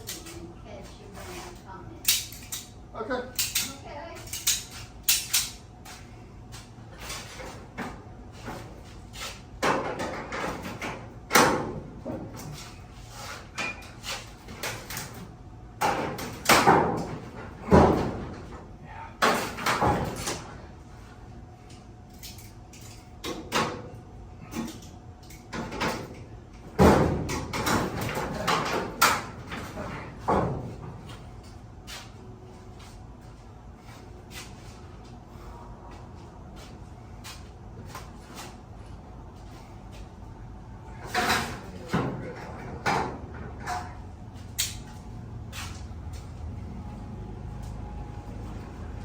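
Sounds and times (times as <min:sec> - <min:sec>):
garage door metal clanking: 0:19.2 - 0:20.6, 0:25.4 - 0:31.0.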